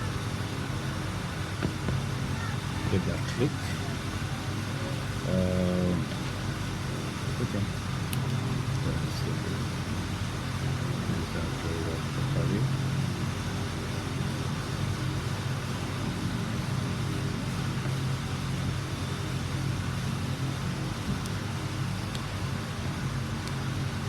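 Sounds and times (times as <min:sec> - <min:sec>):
low mechanical hum: 0:00.0 - 0:24.0.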